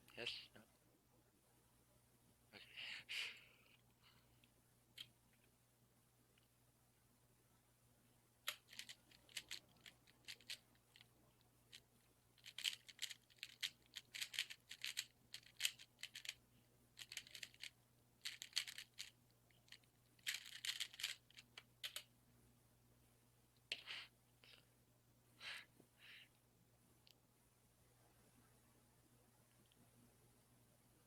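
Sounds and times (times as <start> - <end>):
puzzle cube clicking: 8.5 - 11.1, 12.4 - 16.4, 17.0 - 22.1.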